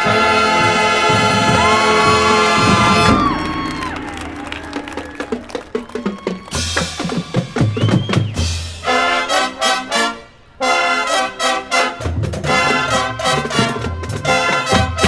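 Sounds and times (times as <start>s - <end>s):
brass punchy chords: 0.0s - 5.2s, 8.5s - 15.0s
snare and bass drums: 0.0s - 9.0s, 12.0s - 15.0s.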